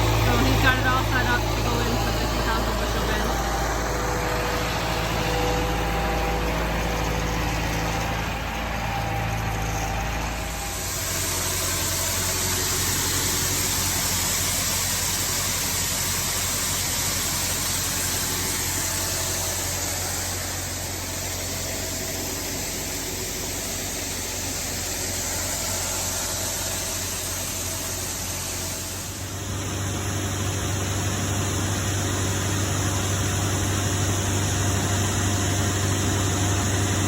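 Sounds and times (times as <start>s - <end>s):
low engine hum: 0.0s - 37.0s.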